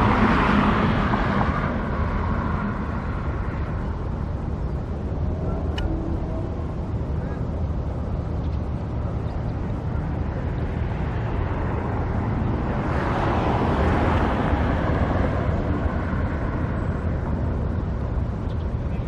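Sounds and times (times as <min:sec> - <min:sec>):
vehicle passing by: 0:00.0 - 0:04.0, 0:10.3 - 0:18.2
road traffic rumble: 0:00.0 - 0:19.0.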